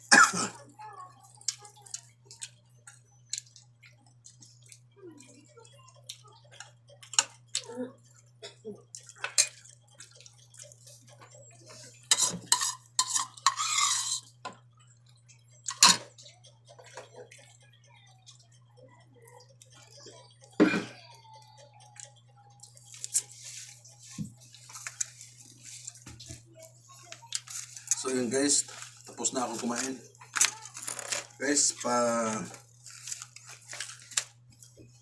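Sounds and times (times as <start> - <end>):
dishes and cutlery clinking: 8.9 - 14.7, 15.6 - 16.2.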